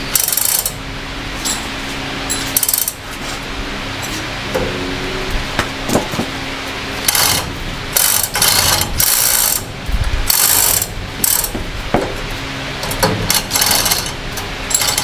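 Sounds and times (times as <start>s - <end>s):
steady low hum: 0.0s - 15.0s
ratcheting metal mechanism clicking: 12.8s - 15.0s.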